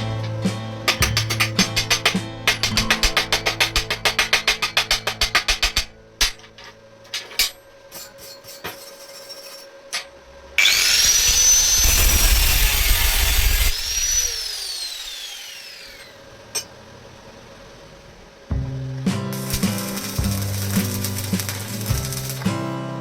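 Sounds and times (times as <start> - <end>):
angle grinder whining: 10.6 - 16.7.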